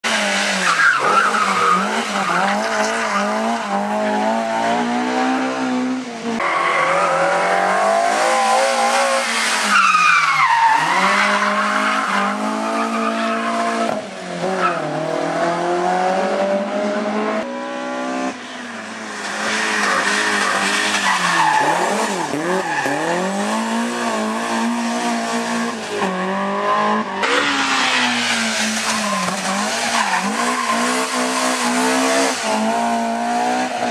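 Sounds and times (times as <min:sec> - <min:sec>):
car engine revving hard: 0:19.2 - 0:33.9.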